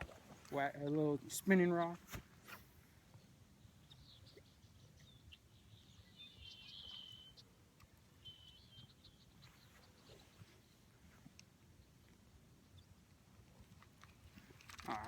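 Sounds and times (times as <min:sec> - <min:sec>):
bird chirping: 0:03.0 - 0:13.0.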